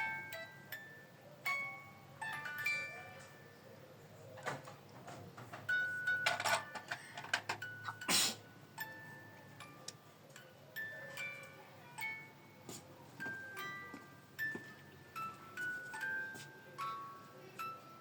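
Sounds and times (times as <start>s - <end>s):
tinkling chime melody: 0.0s - 3.8s, 5.7s - 18.0s
clattering rustling noises: 4.3s - 7.7s.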